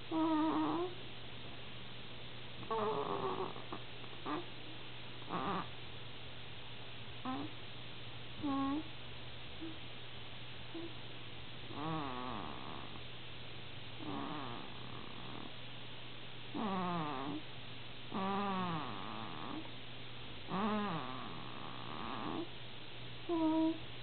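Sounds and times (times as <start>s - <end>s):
squeaky whistling snore: 0.1s - 1.0s, 5.3s - 5.7s, 11.8s - 12.9s, 14.0s - 15.5s, 16.6s - 17.4s, 18.2s - 19.7s, 20.5s - 22.5s, 23.3s - 23.8s.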